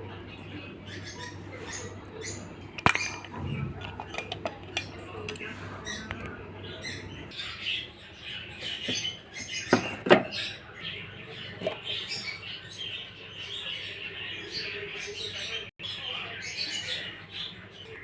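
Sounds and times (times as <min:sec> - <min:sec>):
kitchen utensils clicking and scraping: 0:01.6 - 0:07.3, 0:08.6 - 0:10.4, 0:11.5 - 0:12.3
sharp utensil clack: 0:02.8 - 0:03.3.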